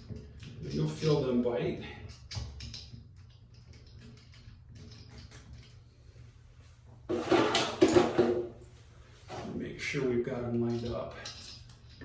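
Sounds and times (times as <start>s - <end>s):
hardware clattering: 7.1s - 8.6s.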